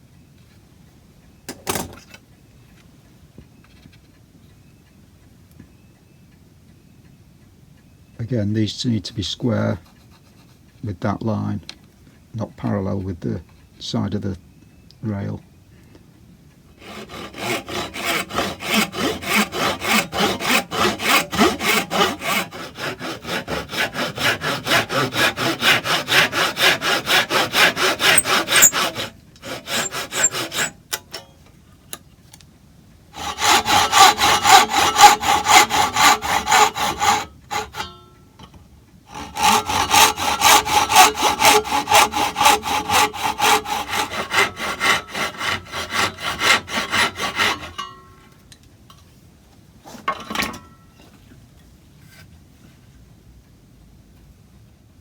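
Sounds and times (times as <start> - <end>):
hand saw cutting wood: 16.8 - 31.2, 33.2 - 38.0, 39.1 - 47.9.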